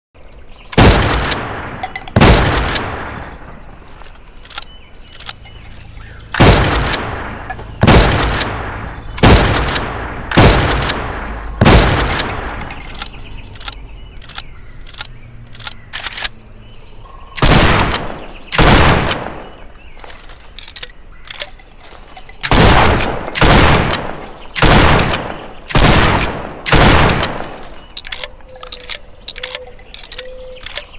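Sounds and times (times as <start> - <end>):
shotgun shots: 0.7 - 3.7, 6.4 - 13.0, 17.4 - 19.6, 22.4 - 27.8.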